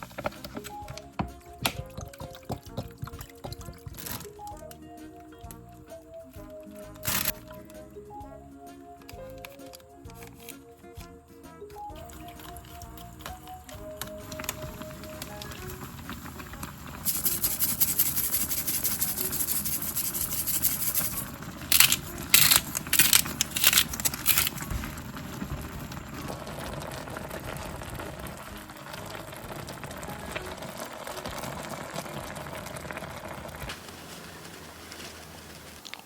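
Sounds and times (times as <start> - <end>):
steady hiss: 17.0 - 22.6.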